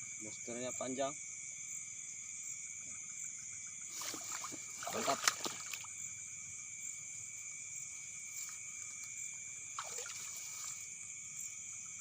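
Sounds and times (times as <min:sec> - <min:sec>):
insects droning: 0:00.0 - 0:12.0.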